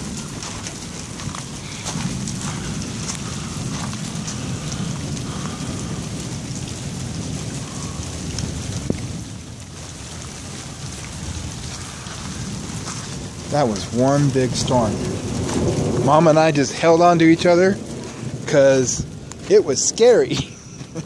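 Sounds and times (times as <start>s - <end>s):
low rumble of thunder: 0.0s - 21.0s
steady rain falling: 0.0s - 21.0s.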